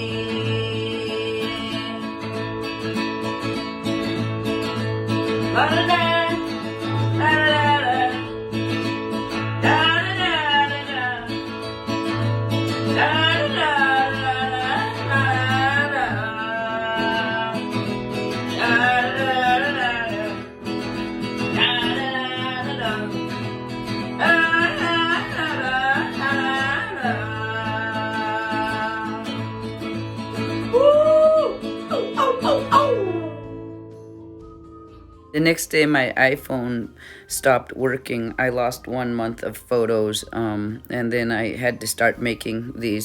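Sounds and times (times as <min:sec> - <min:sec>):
person singing: 0:00.0 - 0:03.1, 0:05.3 - 0:23.4, 0:24.1 - 0:33.7
acoustic guitar strumming: 0:00.0 - 0:43.0.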